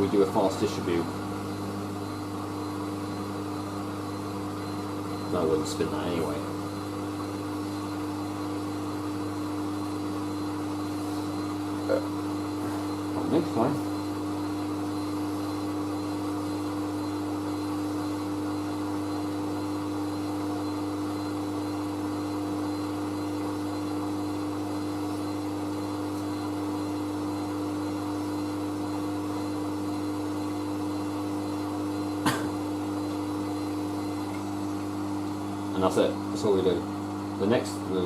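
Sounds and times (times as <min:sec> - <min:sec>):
drain pump humming: 0:00.0 - 0:38.0.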